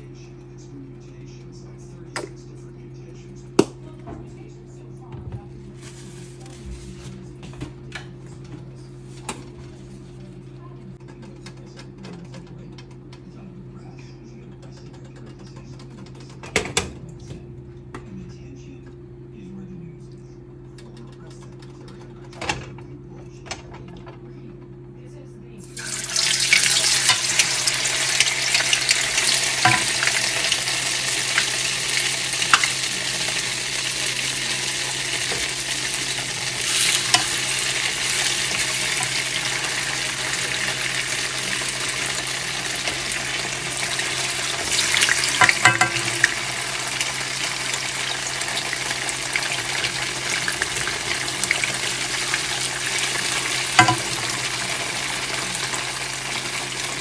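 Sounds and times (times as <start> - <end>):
food sizzling in hot oil: 25.6 - 57.0.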